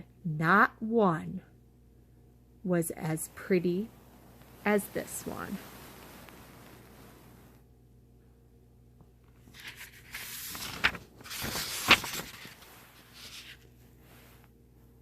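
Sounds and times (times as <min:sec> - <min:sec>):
paper pages rustling: 0:09.3 - 0:13.8.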